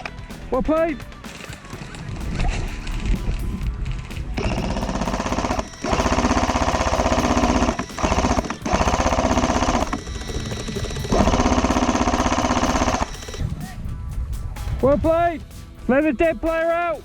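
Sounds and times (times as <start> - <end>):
electric machine gun bursts: 4.1 - 13.6.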